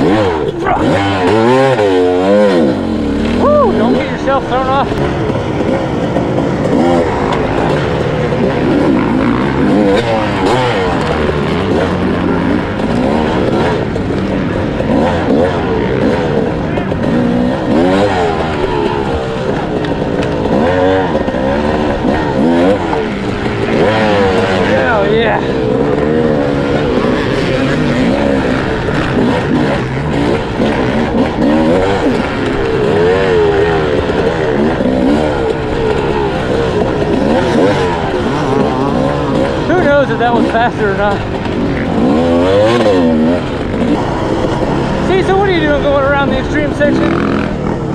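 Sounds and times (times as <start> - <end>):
two-stroke motorcycle engine revving: 0.0 - 47.9.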